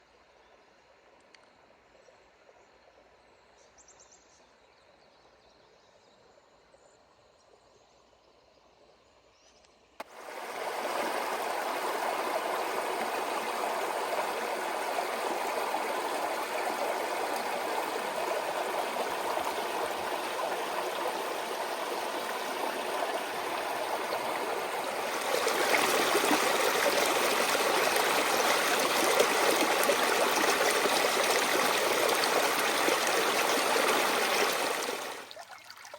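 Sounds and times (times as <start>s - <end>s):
river water rushing: 10.0s - 35.9s.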